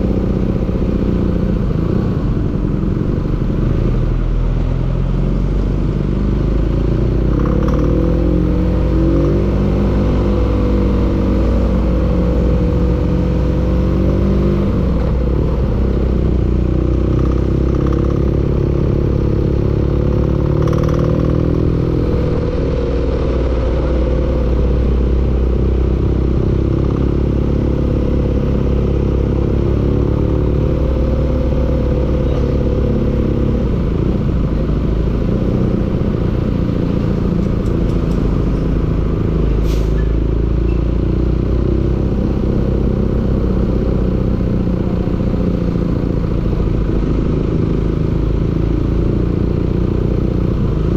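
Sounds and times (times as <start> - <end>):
engine running with a knock: 16.8 - 18.5, 20.4 - 21.5, 37.1 - 39.4.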